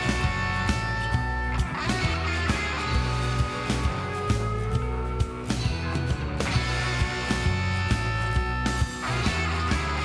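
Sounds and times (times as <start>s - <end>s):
rock song with steady beat: 0.0s - 10.0s.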